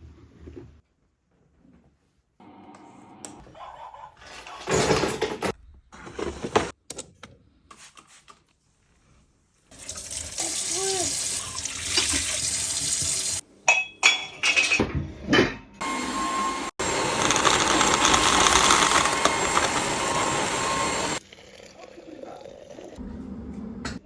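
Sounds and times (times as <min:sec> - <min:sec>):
vacuum cleaner motor whining: 0:15.8 - 0:21.2
household items clinking: 0:16.8 - 0:21.2.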